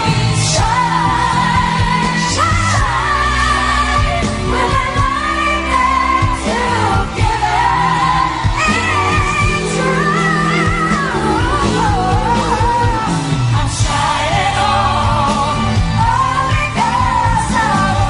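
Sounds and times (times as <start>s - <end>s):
live band with bass and drums: 0.0s - 18.0s
woman singing long notes: 2.4s - 4.4s.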